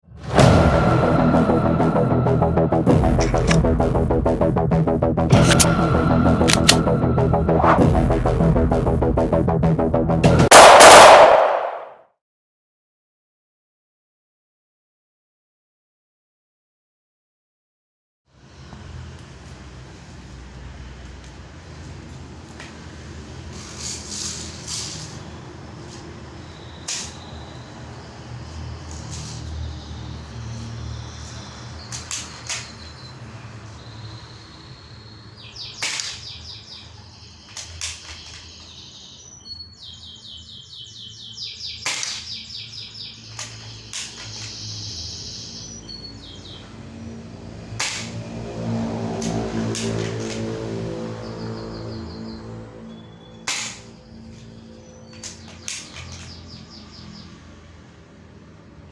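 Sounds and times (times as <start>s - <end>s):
low steady rumble: 0.4s - 10.5s.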